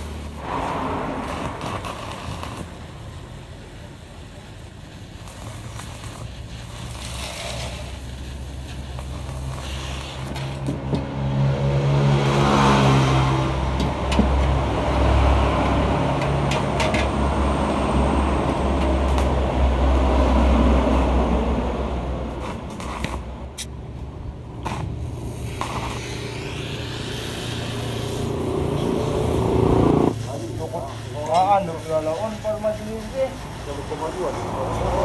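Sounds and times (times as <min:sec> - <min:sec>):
two-stroke engine revving: 0:10.8 - 0:20.9.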